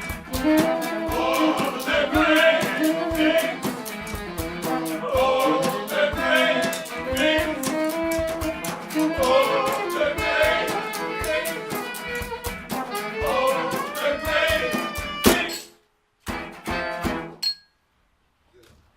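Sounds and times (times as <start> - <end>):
band playing with fiddle: 0.0 - 15.5.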